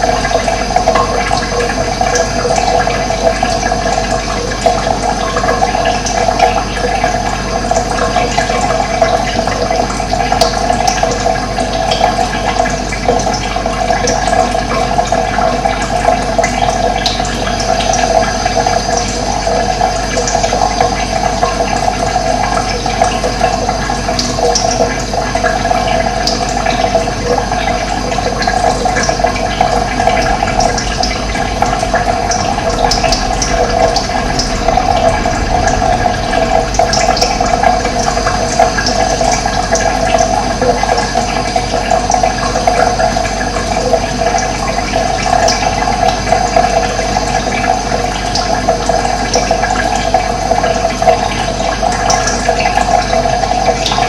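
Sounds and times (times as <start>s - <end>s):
running water rushing: 0.0s - 54.0s.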